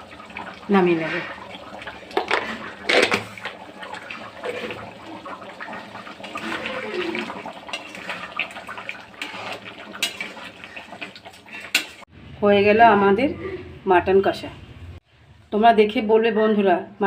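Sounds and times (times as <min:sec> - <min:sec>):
meat sizzling and bubbling: 0:00.0 - 0:12.2.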